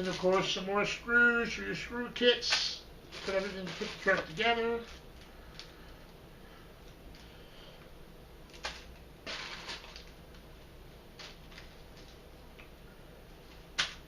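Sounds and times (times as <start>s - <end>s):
plastic bag crinkle: 0.0s - 0.7s, 2.4s - 6.1s, 8.5s - 10.5s, 11.2s - 12.3s.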